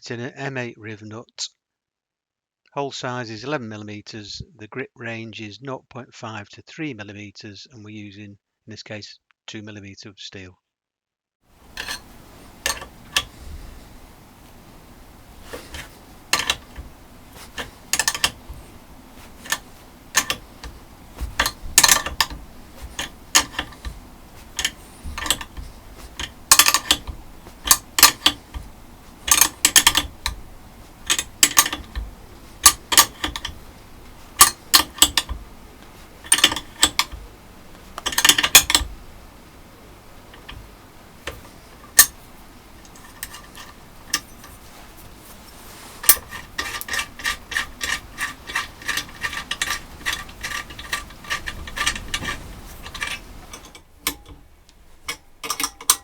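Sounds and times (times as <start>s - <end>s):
rivet nut tool metallic clicks: 11.7s - 39.0s, 40.3s - 42.2s, 46.0s - 54.4s, 55.0s - 56.0s.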